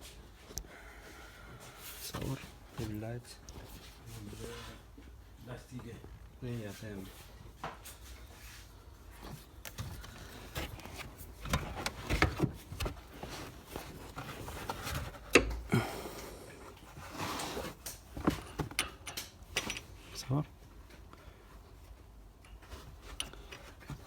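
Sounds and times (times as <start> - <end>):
tools and metal parts clicking: 18.6 - 20.0.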